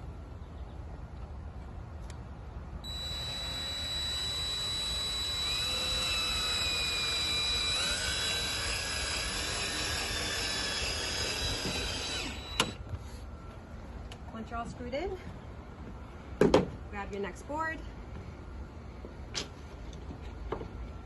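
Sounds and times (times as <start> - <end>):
power drill driving screw: 2.8 - 12.8.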